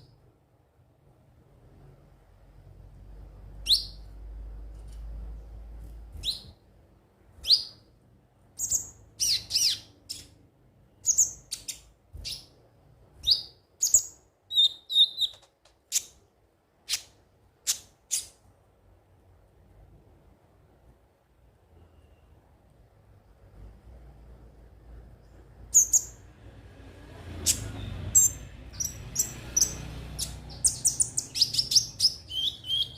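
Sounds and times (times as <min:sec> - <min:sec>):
sunbird chirping: 0:08.6 - 0:10.4, 0:25.2 - 0:26.2, 0:27.4 - 0:32.9.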